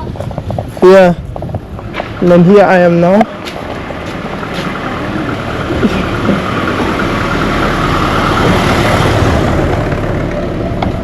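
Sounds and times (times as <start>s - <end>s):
vehicle engine passing: 1.7s - 11.0s.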